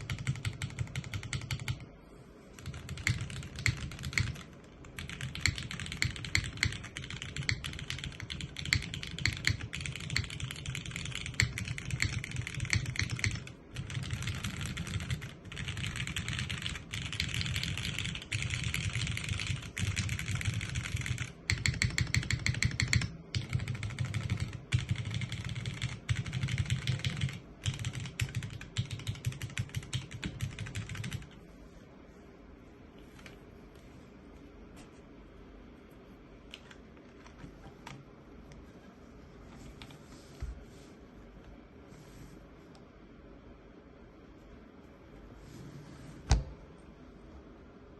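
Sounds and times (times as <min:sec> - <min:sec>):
mechanical keyboard typing: 0:00.0 - 0:01.9, 0:02.6 - 0:31.4.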